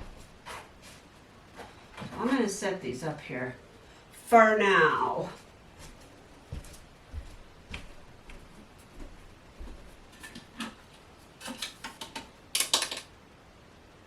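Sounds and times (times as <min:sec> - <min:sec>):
objects clattering and rustling: 0:10.1 - 0:13.1.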